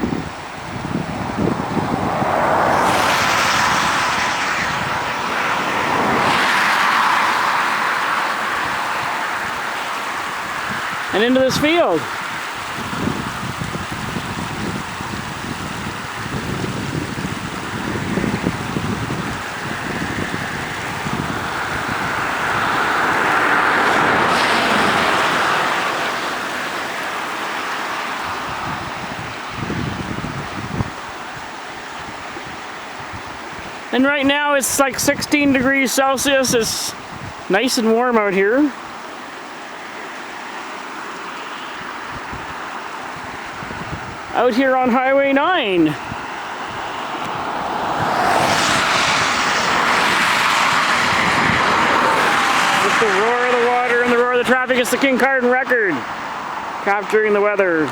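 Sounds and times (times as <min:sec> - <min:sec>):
vehicle tyre noise passing: 0:00.0 - 0:57.9
water rushing into a ditch: 0:00.6 - 0:34.4, 0:45.6 - 0:57.9.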